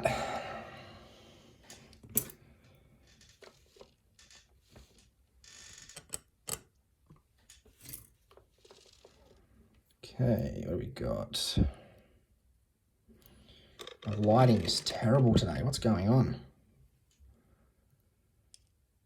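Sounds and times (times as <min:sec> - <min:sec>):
small metal clicks of lock: 0:05.9 - 0:06.8.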